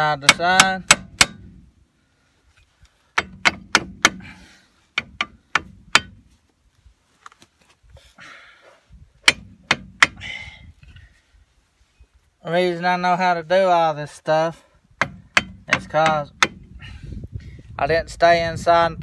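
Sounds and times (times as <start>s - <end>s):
hammer striking metal: 5.0s - 6.2s.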